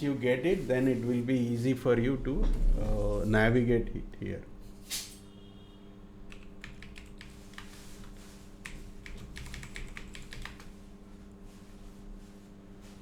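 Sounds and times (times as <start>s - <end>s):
steady low hum: 0.0s - 13.0s
computer keyboard typing: 6.3s - 10.8s.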